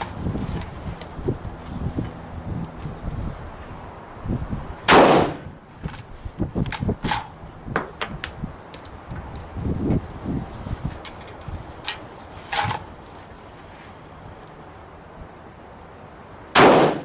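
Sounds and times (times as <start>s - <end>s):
rifle shot: 4.9s - 5.4s, 16.6s - 17.0s.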